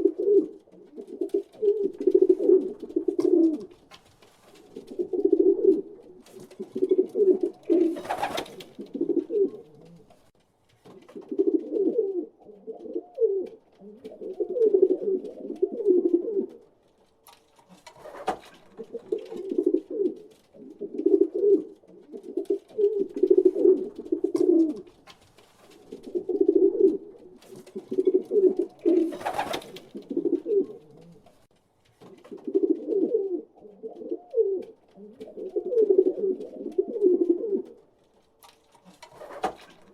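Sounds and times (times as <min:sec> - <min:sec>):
pigeons cooing: 0:00.0 - 0:03.9, 0:04.6 - 0:10.3, 0:11.1 - 0:16.7, 0:18.0 - 0:25.0, 0:25.8 - 0:31.4, 0:32.2 - 0:37.8.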